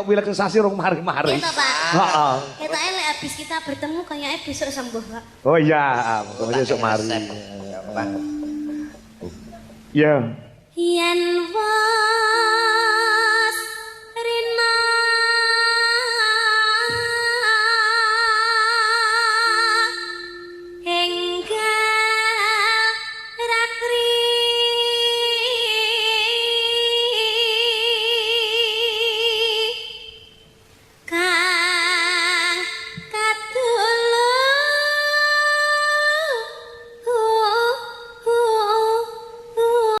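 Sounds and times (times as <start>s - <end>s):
woman singing with vibrato: 1.3s - 5.4s, 6.0s - 9.9s, 10.8s - 30.5s, 31.1s - 40.0s
low steady note: 4.7s - 10.6s, 18.7s - 24.3s.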